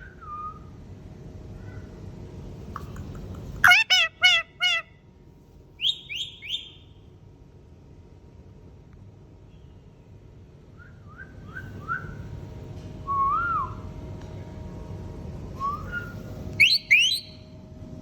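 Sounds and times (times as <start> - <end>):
parakeet whistling: 3.6 - 4.8, 5.8 - 6.9, 16.6 - 17.4.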